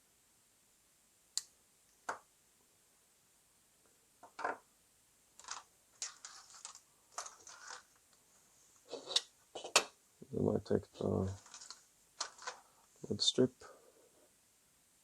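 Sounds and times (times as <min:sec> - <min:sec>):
handling noise: 0:11.3 - 0:12.8.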